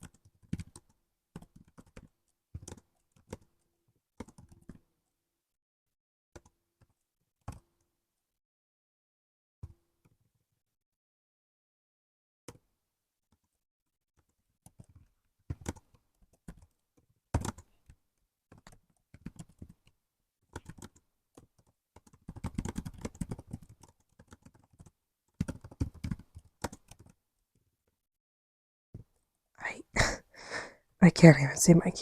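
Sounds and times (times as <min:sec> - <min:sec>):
typing on laptop keyboard: 0:00.0 - 0:05.1, 0:06.4 - 0:07.9, 0:14.2 - 0:27.2.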